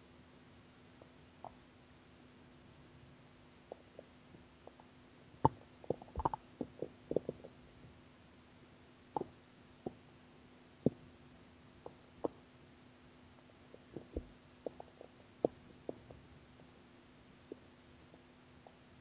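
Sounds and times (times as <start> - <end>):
faint steady hum: 0.0 - 19.0
stomach gurgling: 3.6 - 7.6, 9.1 - 10.0, 11.8 - 12.4, 13.4 - 16.3.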